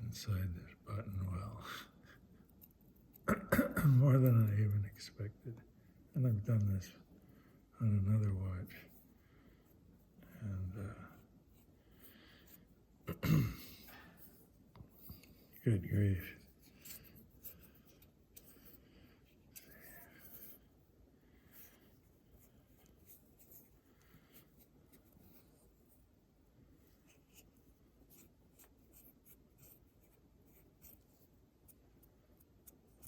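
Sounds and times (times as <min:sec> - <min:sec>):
small tool scratching grime: 0:26.9 - 0:33.0.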